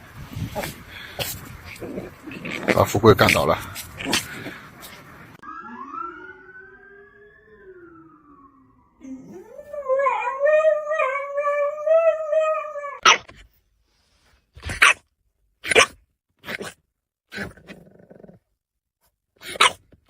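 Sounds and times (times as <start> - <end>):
dog howling: 5.5 - 13.0
dog whining: 9.0 - 13.0.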